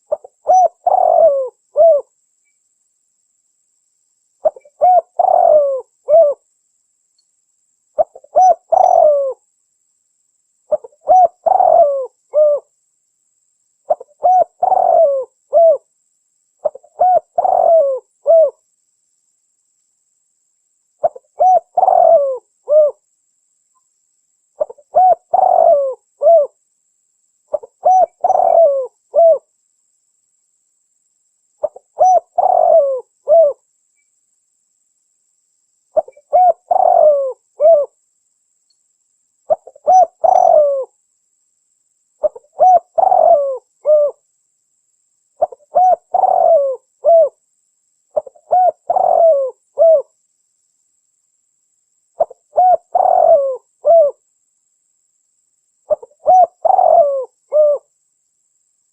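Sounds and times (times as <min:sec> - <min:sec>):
dove cooing: 0:00.0 - 0:02.1, 0:04.4 - 0:06.4, 0:08.0 - 0:09.4, 0:10.7 - 0:12.7, 0:13.9 - 0:15.9, 0:16.6 - 0:18.6, 0:21.0 - 0:23.0, 0:24.6 - 0:26.6, 0:27.5 - 0:29.5, 0:31.6 - 0:33.6, 0:36.0 - 0:38.0, 0:39.5 - 0:40.9, 0:42.2 - 0:44.2, 0:45.4 - 0:47.4, 0:48.2 - 0:50.1, 0:52.2 - 0:54.2, 0:55.9 - 0:57.9.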